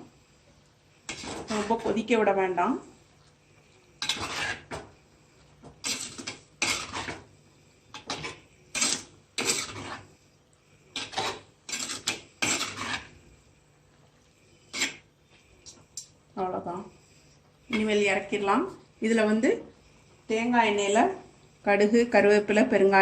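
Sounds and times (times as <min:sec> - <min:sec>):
spoon scraping in pot: 0:01.0 - 0:02.1, 0:03.2 - 0:13.4, 0:14.4 - 0:15.8.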